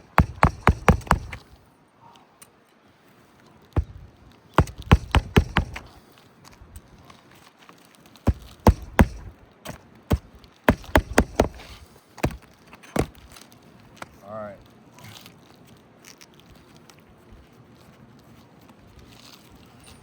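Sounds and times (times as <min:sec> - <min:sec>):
hammer driving nails into shingle: 0:00.0 - 0:01.6, 0:03.8 - 0:06.0, 0:08.3 - 0:13.4.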